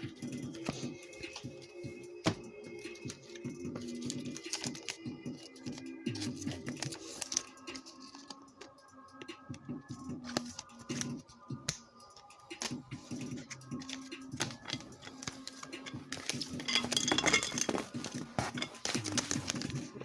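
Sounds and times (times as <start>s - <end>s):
trading cards clicking and tapping: 10.2s - 20.0s.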